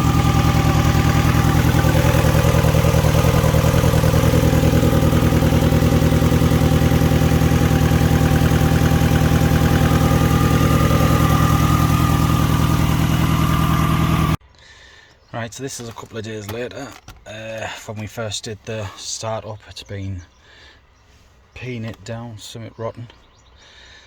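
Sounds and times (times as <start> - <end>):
car engine idling: 0.0 - 14.4
exhaust leak blowing: 0.0 - 14.4.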